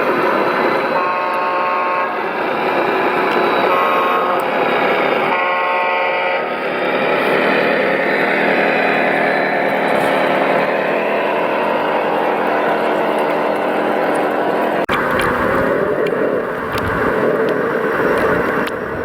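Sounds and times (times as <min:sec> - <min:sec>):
toy truck engine running: 0:00.0 - 0:19.0
horn blasts: 0:00.8 - 0:02.4, 0:03.5 - 0:07.5.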